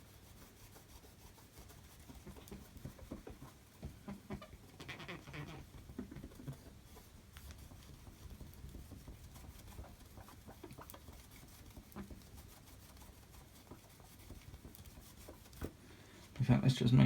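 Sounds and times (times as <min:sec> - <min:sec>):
hands rubbing phone screen: 0:00.0 - 0:15.8.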